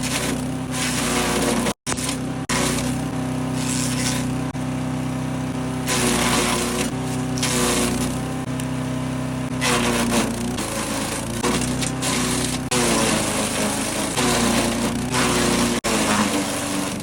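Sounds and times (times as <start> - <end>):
wood chipper engine running: 0.0 - 17.0
branches being chipped: 3.5 - 4.3.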